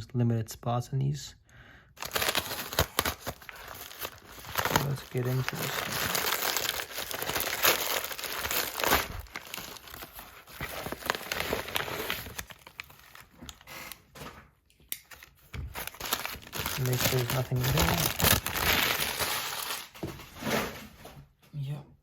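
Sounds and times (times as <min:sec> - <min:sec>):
packaging torn and crumpled: 0:02.0 - 0:14.0, 0:15.0 - 0:20.0.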